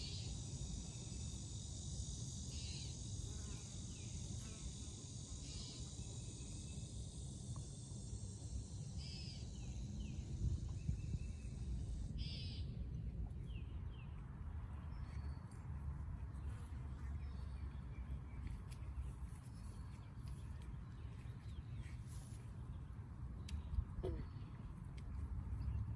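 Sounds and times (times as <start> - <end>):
high-pitched insect chorus: 0.0 - 12.8.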